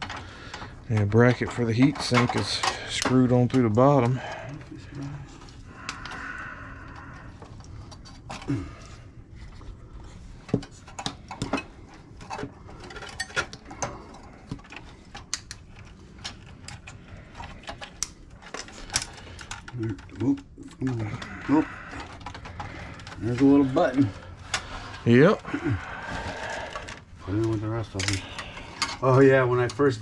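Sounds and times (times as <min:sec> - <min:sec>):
metal parts and tools clinking: 0:00.0 - 0:04.3, 0:10.6 - 0:24.8, 0:26.7 - 0:29.8.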